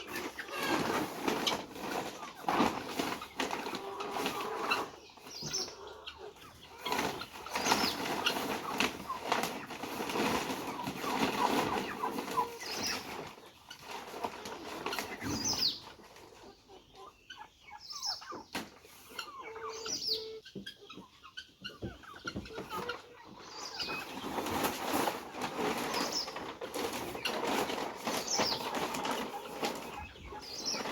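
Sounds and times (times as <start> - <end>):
poultry clucking: 0.0 - 30.9
wings flapping: 6.8 - 13.4, 23.7 - 30.9.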